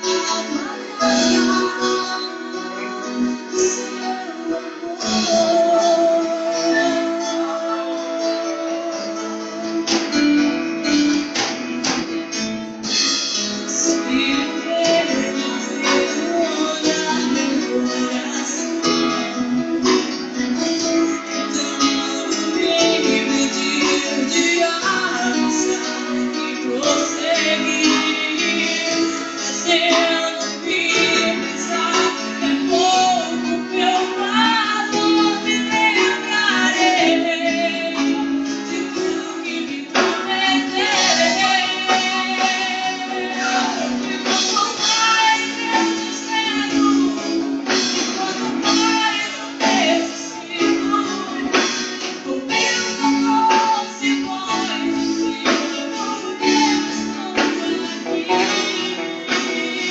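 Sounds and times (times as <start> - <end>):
woman singing gospel: 0.0 - 12.0, 13.6 - 59.9
live band with strummed guitar: 0.0 - 59.9.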